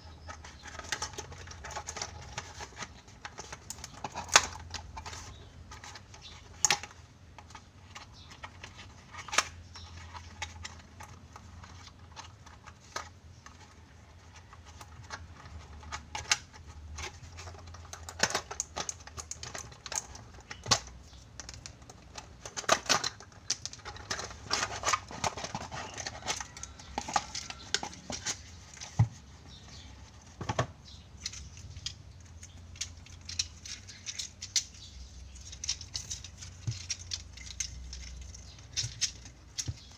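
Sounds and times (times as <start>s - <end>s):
plastic parts clicking: 0.2s - 39.9s
packaging crinkling: 14.4s - 30.0s.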